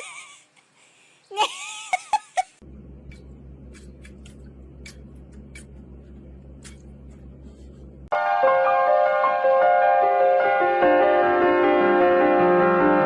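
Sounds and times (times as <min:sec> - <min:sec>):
person laughing: 0:00.0 - 0:00.6, 0:01.3 - 0:02.6
steady low hum: 0:01.4 - 0:08.1.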